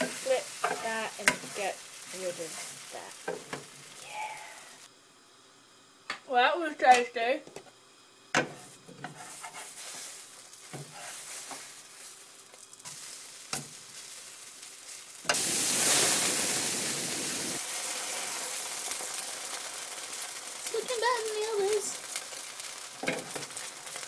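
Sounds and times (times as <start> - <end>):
utensil scraping frying pan: 0.0 - 3.8, 8.4 - 14.3
batter sizzling in pan: 0.0 - 24.0.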